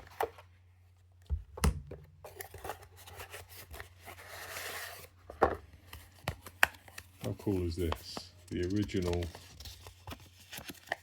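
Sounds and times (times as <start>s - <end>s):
papery rustle: 6.8s - 11.0s.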